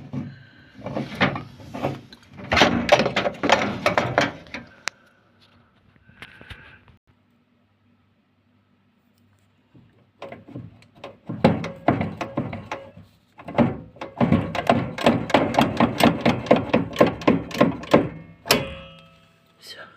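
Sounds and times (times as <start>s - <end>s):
metallic knocks on shock absorber: 10.2s - 19.2s.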